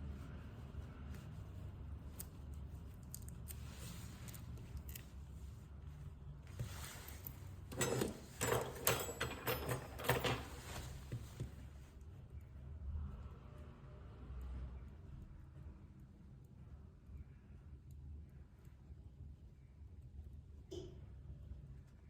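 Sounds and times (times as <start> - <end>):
scraping and rustling: 6.5 - 11.9
hand tools clicking and scraping: 7.0 - 11.0.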